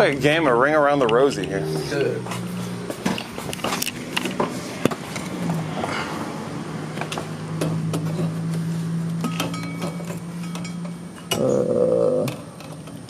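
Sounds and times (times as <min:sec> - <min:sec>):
hand tools clicking and knocking: 0:00.8 - 0:05.6, 0:06.9 - 0:11.6, 0:12.2 - 0:13.0.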